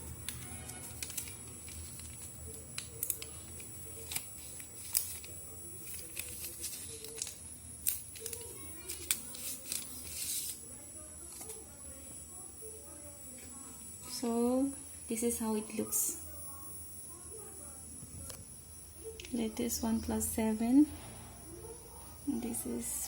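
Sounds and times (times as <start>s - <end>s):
plastic packaging rustling: 0.0s - 10.6s.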